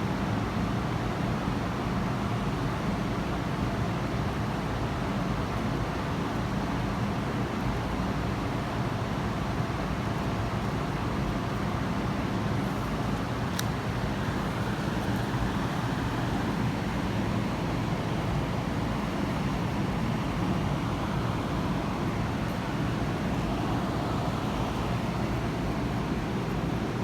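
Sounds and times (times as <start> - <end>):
steady low background noise: 0.0 - 27.0
faint click: 13.5 - 13.8.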